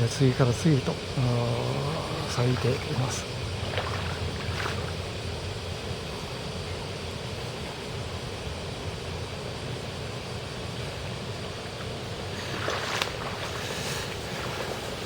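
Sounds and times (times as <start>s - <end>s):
wind on microphone: 1.2s - 7.3s.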